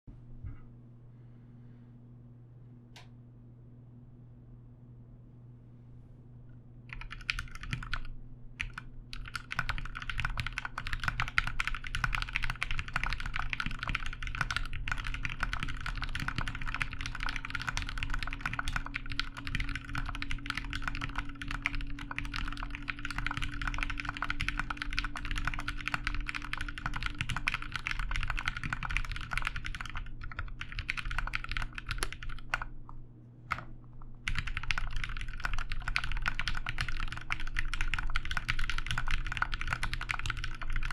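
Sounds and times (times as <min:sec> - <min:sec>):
mechanical keyboard typing: 0:06.9 - 0:32.7, 0:34.2 - 0:40.9.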